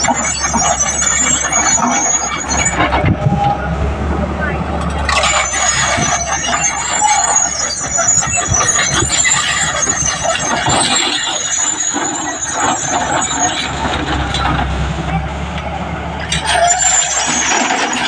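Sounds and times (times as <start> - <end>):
high-pitched metallic squeal: 0.0 - 18.0
machine clanking: 4.4 - 18.0.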